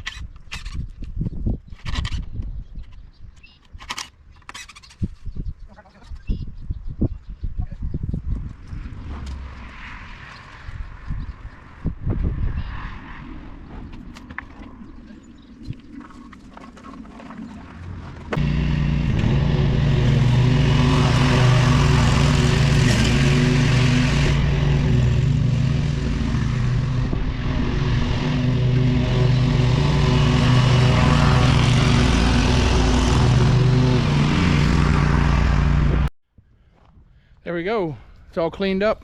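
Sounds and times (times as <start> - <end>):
small engine running at high speed: 18.3 - 36.1.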